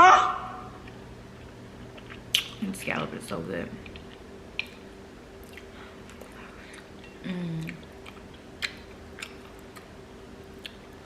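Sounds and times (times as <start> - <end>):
closed-mouth hum: 0.0 - 11.0
wet mouth smacks and clicks: 1.9 - 2.6, 3.8 - 4.8, 7.7 - 9.9
close chewing: 7.6 - 9.9.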